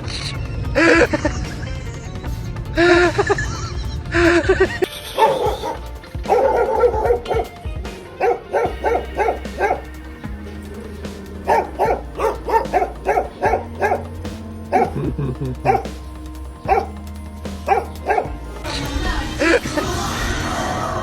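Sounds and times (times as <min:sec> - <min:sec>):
background music: 0:00.0 - 0:21.0
dog yapping: 0:04.4 - 0:07.6, 0:08.2 - 0:09.9, 0:11.5 - 0:14.1, 0:14.7 - 0:15.9, 0:16.7 - 0:16.9, 0:17.7 - 0:18.3.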